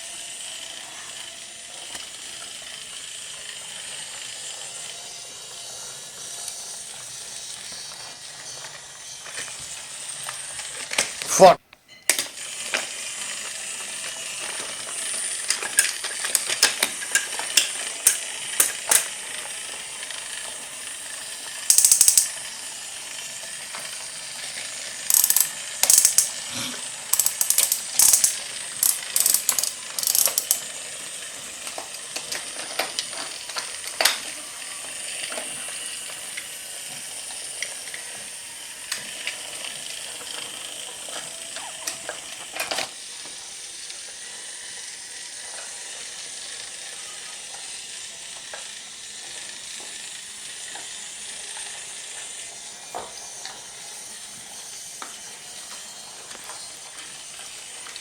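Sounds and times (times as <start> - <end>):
toy motor and gears whirring: 0.0 - 11.6, 12.2 - 58.0
toy pieces clicking and clattering: 12.6 - 26.5, 27.1 - 38.0.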